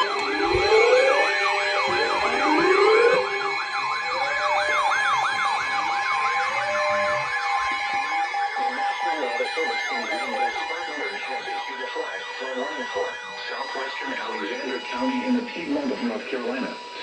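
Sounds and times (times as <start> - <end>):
rising siren sweeps: 0.0 - 12.4
steady alarm tone: 0.0 - 17.0
wailing siren tones: 0.0 - 17.0.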